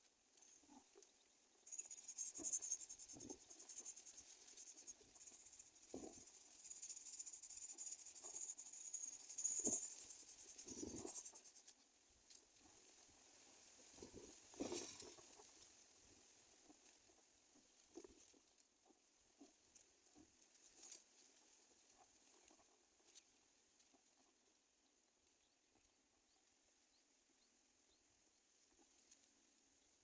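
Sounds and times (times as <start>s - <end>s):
faint insect chirring: 0.0s - 30.0s
soft rustles and knocks: 10.6s - 24.4s.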